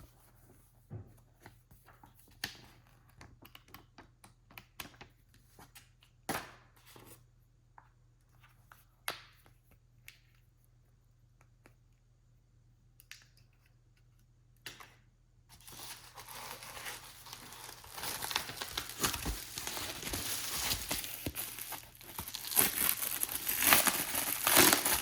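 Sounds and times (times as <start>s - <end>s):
packaging rustling: 15.5s - 25.0s.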